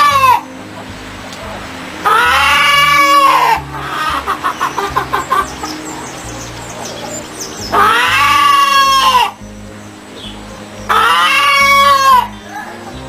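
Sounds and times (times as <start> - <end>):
long drawn-out animal calls: 0.0 - 0.5, 2.0 - 9.4, 10.8 - 13.0
background music: 0.0 - 13.0
hen clucking: 2.0 - 9.4, 10.9 - 13.0.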